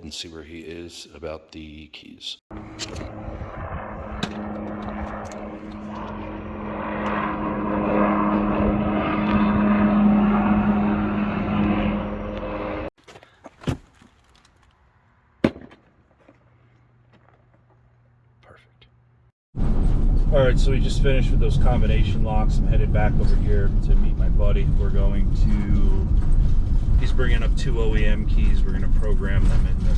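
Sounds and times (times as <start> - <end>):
vehicle running: 2.5 - 12.9, 19.6 - 29.9.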